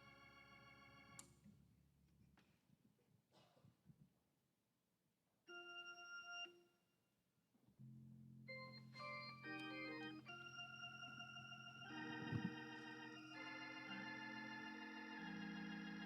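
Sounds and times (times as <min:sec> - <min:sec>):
organ playing chords: 0:00.0 - 0:01.2, 0:05.5 - 0:06.6, 0:08.2 - 0:16.0.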